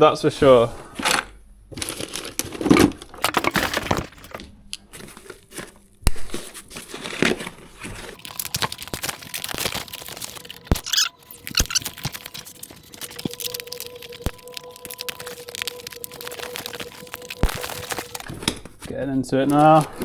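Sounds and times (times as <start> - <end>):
plastic and foam wrap rustling: 0.4 - 20.0
snips snapping: 8.2 - 18.8.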